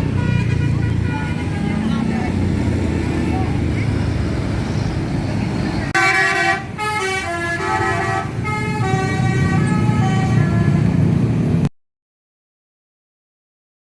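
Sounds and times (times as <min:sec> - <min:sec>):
low traffic rumble: 0:00.0 - 0:11.7
bus musical horn tune: 0:00.1 - 0:01.9, 0:06.0 - 0:11.2.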